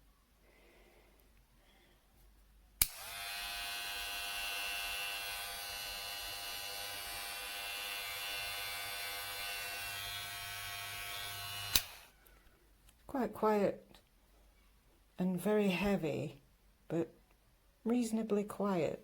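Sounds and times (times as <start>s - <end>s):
hair clipper switch click: 2.8s - 3.3s, 4.0s - 12.1s
hair clipper motor buzzing: 2.8s - 12.1s.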